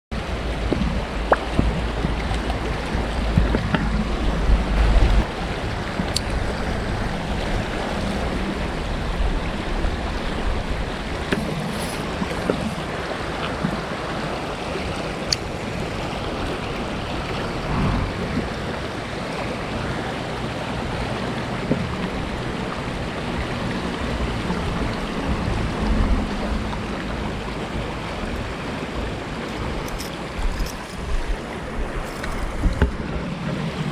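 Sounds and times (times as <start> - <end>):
rushing water: 0.1 - 33.9
wind buffeting microphone: 0.2 - 33.9.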